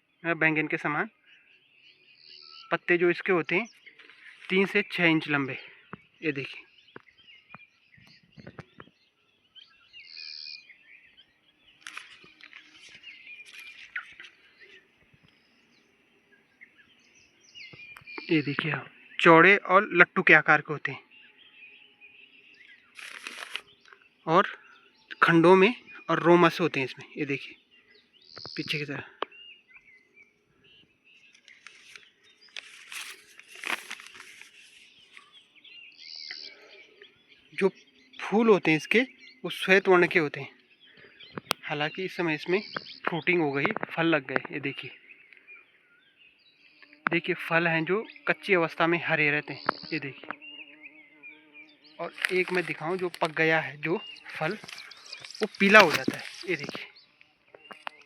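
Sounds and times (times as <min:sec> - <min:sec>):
birds chirping and singing: 0:00.0 - 0:58.0
outdoor background noise: 0:00.0 - 0:58.0
leaves rustling: 0:03.8 - 0:06.4, 0:11.6 - 0:15.7, 0:22.5 - 0:24.1, 0:30.7 - 0:43.7, 0:51.9 - 0:58.0
short rustling bursts: 0:23.0 - 0:23.7, 0:31.4 - 0:35.4, 0:54.1 - 0:56.8.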